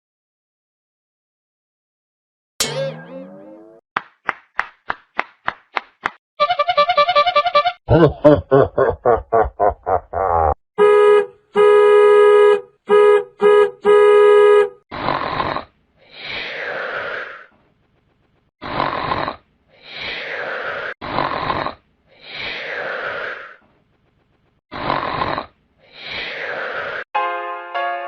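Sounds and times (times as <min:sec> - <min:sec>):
comedy honks: 0:06.4 - 0:08.0, 0:10.8 - 0:14.8
cartoon snoring: 0:14.9 - 0:17.5, 0:18.6 - 0:23.6, 0:24.7 - 0:27.1.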